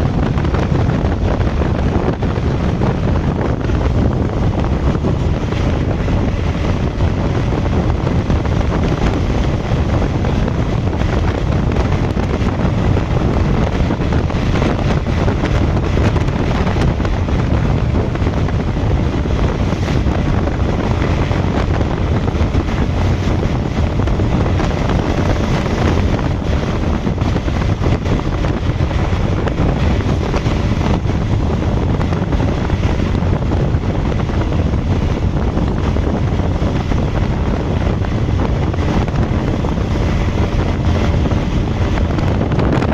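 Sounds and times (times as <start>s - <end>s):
wind and road noise: 0.0s - 42.9s.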